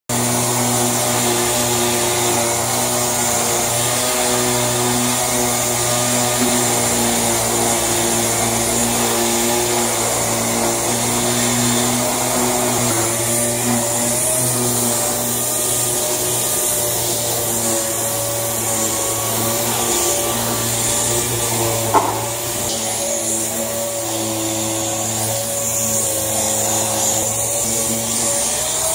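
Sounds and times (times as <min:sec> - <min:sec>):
power sander running: 0:00.1 - 0:28.9.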